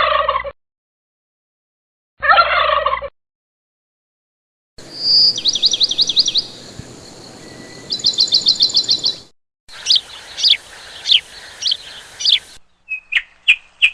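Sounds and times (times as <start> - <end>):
sharp high bird chirps: 4.8 - 13.9
falling whistled bird notes: 4.9 - 9.2.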